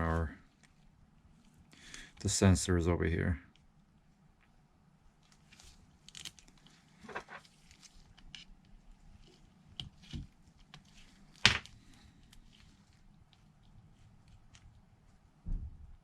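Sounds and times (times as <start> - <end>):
tape rustling and crinkling: 3.5 - 15.4.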